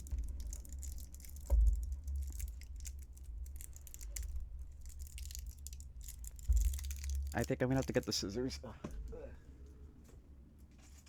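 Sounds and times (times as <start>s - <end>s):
shrink-wrap crinkling: 0.0s - 8.7s.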